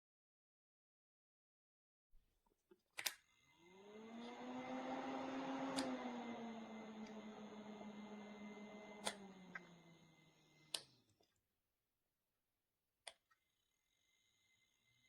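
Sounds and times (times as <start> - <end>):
fan hum winding down: 3.5 - 11.0.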